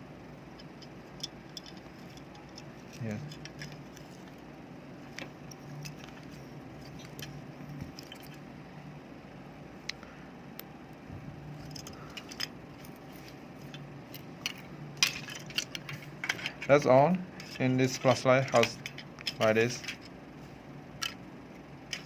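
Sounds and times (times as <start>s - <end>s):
faint steady hum: 0.0s - 22.0s
small parts clicking and rattling: 0.4s - 4.5s, 5.1s - 8.5s, 11.6s - 20.2s, 21.0s - 22.0s.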